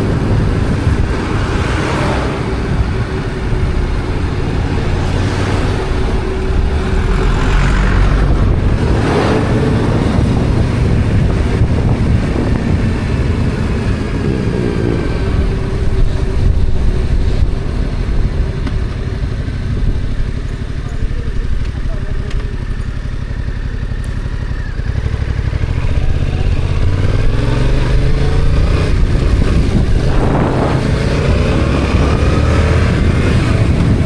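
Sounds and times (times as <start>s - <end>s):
rushes of noise: 0.0s - 19.0s, 24.8s - 34.0s
motorcycle engine running: 0.0s - 34.0s.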